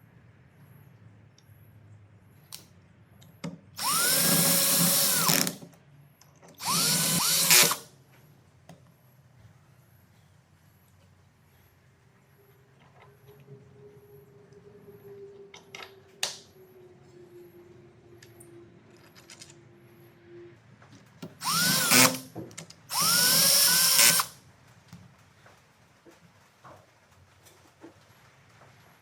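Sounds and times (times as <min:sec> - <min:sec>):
power drill motor whine: 0:03.8 - 0:05.6, 0:06.6 - 0:07.9, 0:21.4 - 0:22.3, 0:22.9 - 0:24.3.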